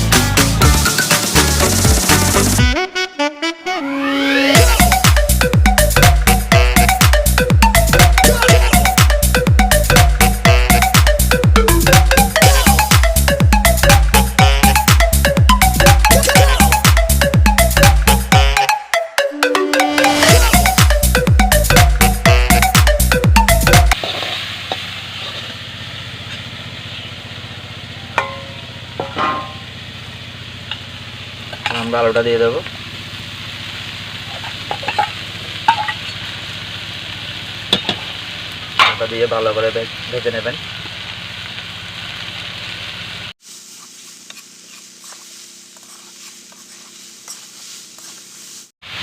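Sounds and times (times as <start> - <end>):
background music: 0.0 - 24.0
cabbage sizzling in a pot: 24.0 - 49.0.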